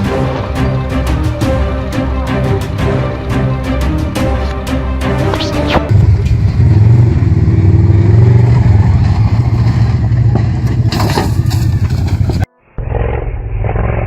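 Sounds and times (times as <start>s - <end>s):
music: 0.0s - 6.0s
vehicle engine running low: 5.9s - 12.5s.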